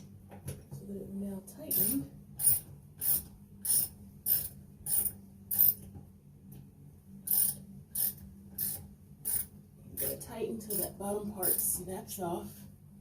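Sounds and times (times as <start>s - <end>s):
ratchet wrench clicking: 1.7s - 5.8s, 7.3s - 10.8s.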